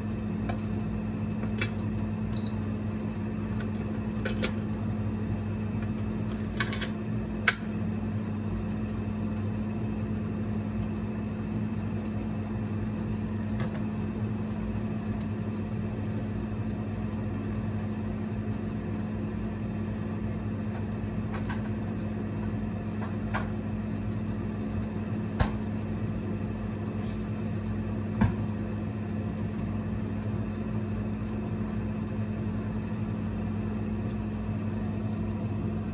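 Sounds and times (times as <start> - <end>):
induction cooktop humming: 0.0 - 35.9.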